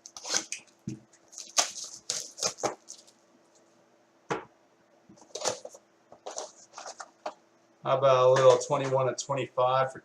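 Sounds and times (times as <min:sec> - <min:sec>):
wrapper and cardboard crackling: 0:01.3 - 0:03.2, 0:05.2 - 0:07.2.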